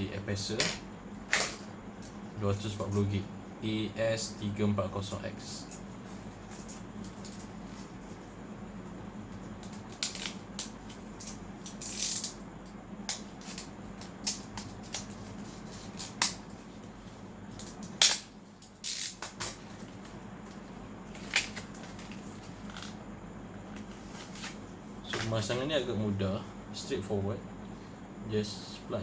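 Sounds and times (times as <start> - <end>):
faint low hum: 0.0 - 29.0
clicks and rustles of laptop parts: 9.3 - 12.4, 13.1 - 23.0, 23.7 - 25.7.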